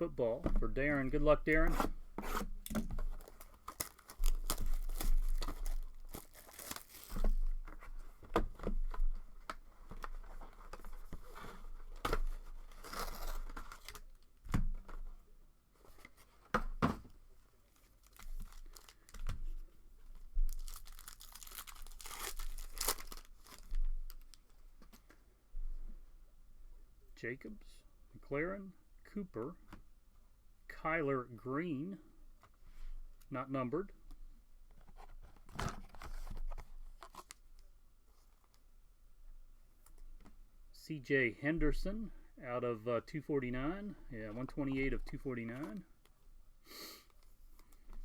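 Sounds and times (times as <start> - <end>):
foil wrappers tearing and crinkling: 3.1 - 7.3, 12.7 - 14.2, 17.7 - 19.3, 20.5 - 24.4.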